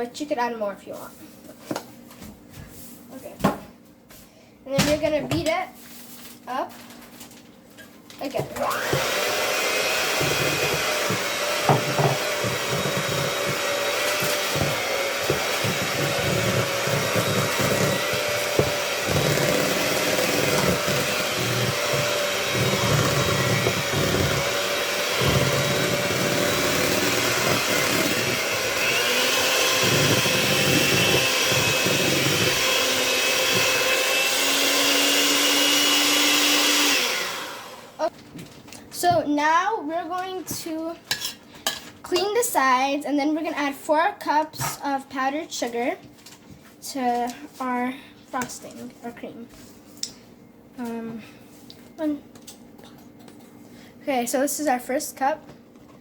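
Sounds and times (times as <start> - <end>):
electric mixer beating frosting: 8.3 - 38.1.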